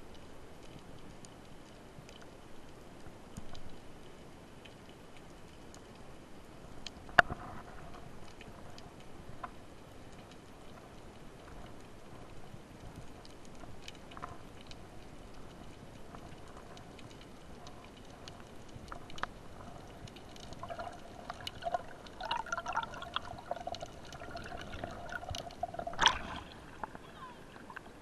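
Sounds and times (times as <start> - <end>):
faint clicks: 0.1 - 28.0
water bubbling and gurgling: 14.3 - 28.0.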